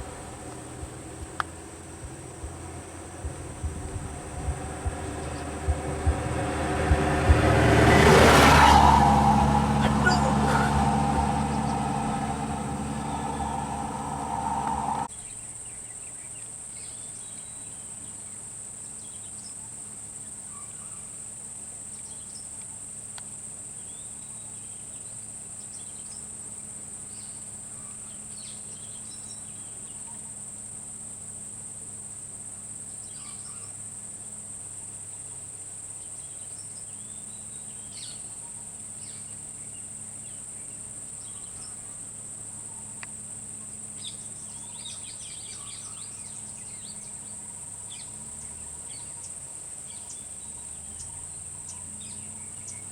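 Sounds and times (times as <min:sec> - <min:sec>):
insects droning: 0:00.0 - 0:15.1
vehicle engine running: 0:00.0 - 0:15.1.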